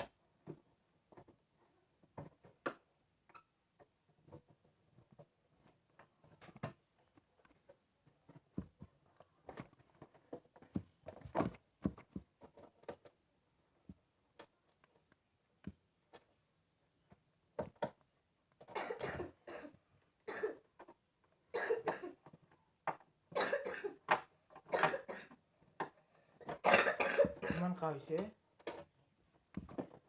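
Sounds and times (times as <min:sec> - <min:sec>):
person coughing hard: 0:18.8 - 0:20.6, 0:21.6 - 0:22.2, 0:23.4 - 0:24.0, 0:24.7 - 0:25.4, 0:26.6 - 0:27.7.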